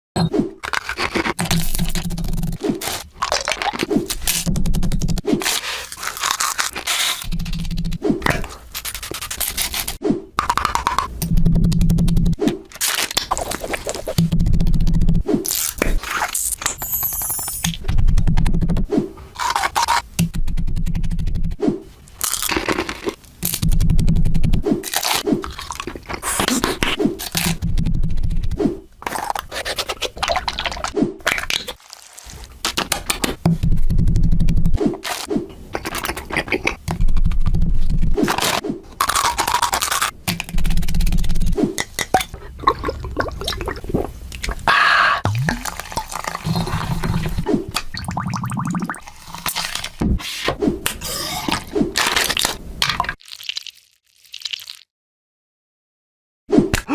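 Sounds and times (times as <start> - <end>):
crisp crunching and scraping: 5.4 - 7.6.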